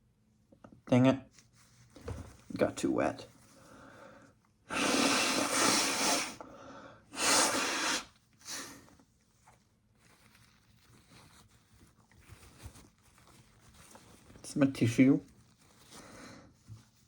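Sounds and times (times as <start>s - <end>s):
person hissing breaths: 3.6s - 8.9s.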